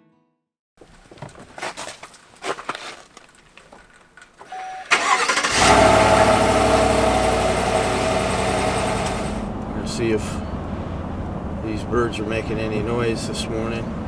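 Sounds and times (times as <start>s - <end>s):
vehicle engine starting and idling: 4.5s - 9.8s.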